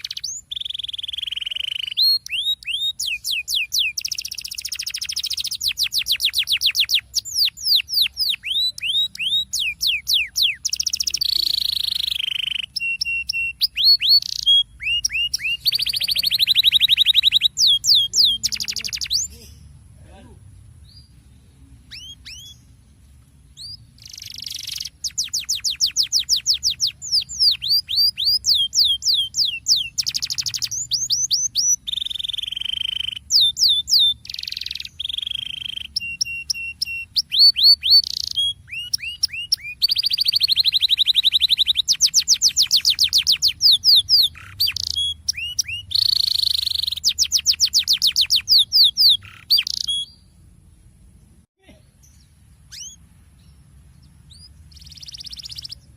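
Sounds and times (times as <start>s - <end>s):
canary singing whistles and trills: 0.0s - 19.9s, 20.8s - 22.9s, 23.5s - 50.4s, 51.9s - 55.9s.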